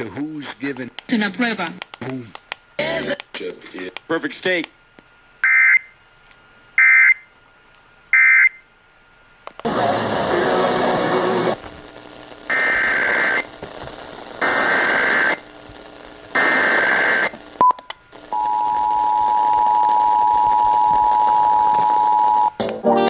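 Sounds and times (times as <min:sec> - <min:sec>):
noisy data bursts: 0:09.6 - 0:22.6.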